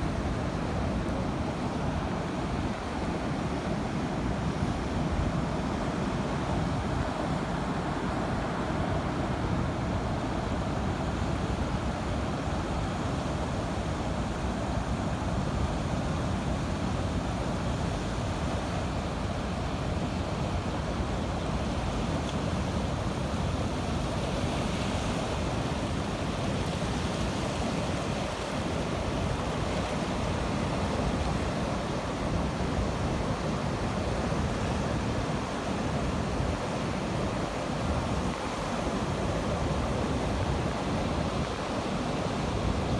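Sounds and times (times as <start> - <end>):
sea surf washing: 18.2 - 42.9.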